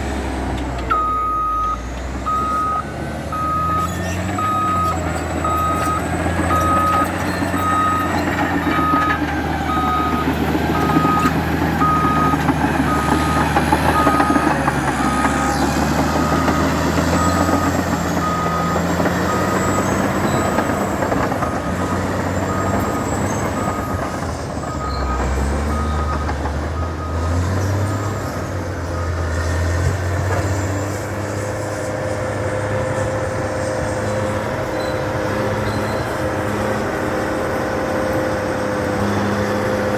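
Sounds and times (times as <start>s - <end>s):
bulldozer diesel engine running: 0.0s - 39.9s
reversing alarm beeping: 0.9s - 30.0s.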